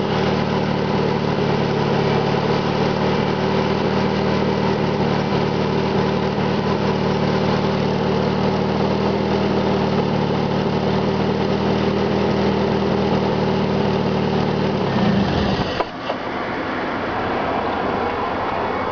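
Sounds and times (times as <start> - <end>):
car engine idling: 0.0 - 18.9.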